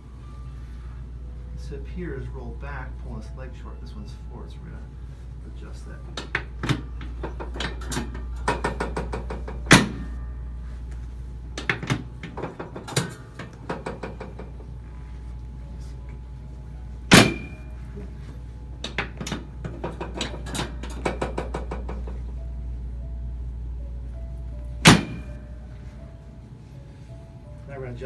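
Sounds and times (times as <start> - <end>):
steady low hum: 0.0 - 28.0
loud thunks of drop table: 17.1 - 17.7, 24.8 - 25.4.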